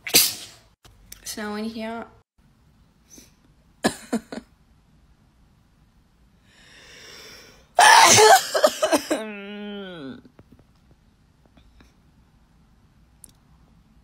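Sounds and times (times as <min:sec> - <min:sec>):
person sneezing loudly: 0:07.8 - 0:09.2.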